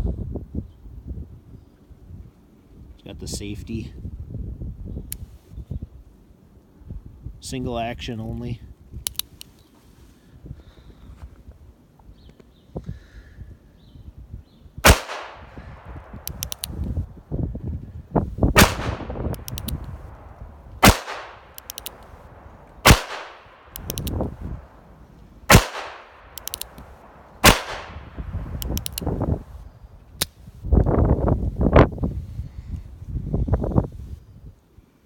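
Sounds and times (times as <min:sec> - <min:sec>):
light metallic clicks: 0:09.0 - 0:09.7, 0:16.0 - 0:17.0, 0:19.3 - 0:20.5, 0:21.1 - 0:24.4, 0:25.2 - 0:27.9, 0:28.5 - 0:29.2
revolver gunshots: 0:14.8 - 0:16.7, 0:18.6 - 0:24.8, 0:25.5 - 0:28.9.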